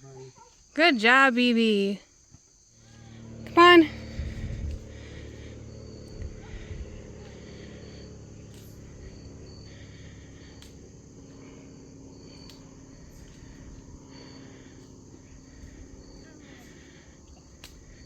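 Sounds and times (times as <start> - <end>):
insects trilling: 0.0 - 18.0
continuous low rumble: 2.1 - 18.0.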